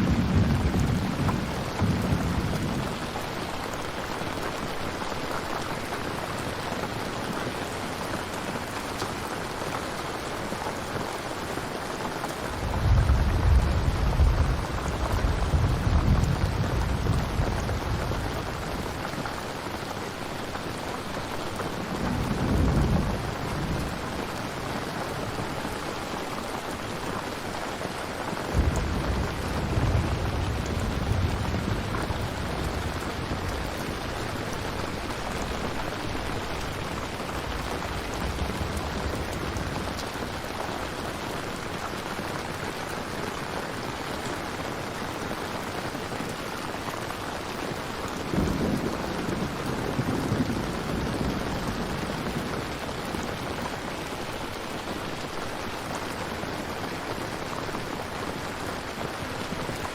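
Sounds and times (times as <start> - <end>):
thunder rumbling: 0.0 - 4.9, 12.4 - 19.8, 21.5 - 25.9, 28.4 - 41.2, 48.1 - 53.8
steady rain: 0.0 - 59.9.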